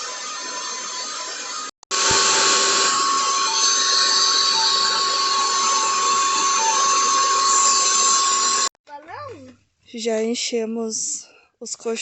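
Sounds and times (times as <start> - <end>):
electric air pump running: 0.0 - 8.7.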